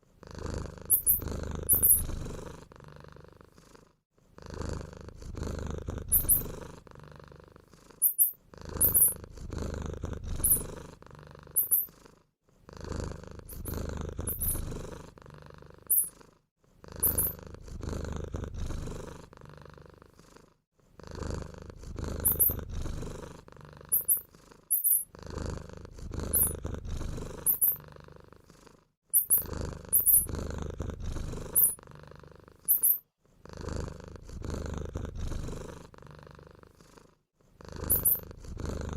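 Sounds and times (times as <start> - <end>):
low purring rumble: 0.1 - 11.6, 12.6 - 16.1, 16.9 - 20.1, 21.0 - 24.0, 25.1 - 28.5, 29.3 - 32.6, 33.3 - 36.8, 37.6 - 38.9
mouse squeaks: 0.9 - 2.0, 6.1 - 6.5, 8.0 - 9.2, 10.4 - 10.7, 11.6 - 11.9, 13.5 - 13.7, 14.3 - 14.6, 15.9 - 16.1, 17.0 - 17.4, 22.2 - 22.6, 23.9 - 25.1, 26.4 - 26.6, 27.4 - 27.8, 29.2 - 30.3, 31.6 - 31.8, 32.7 - 33.0, 37.9 - 38.2.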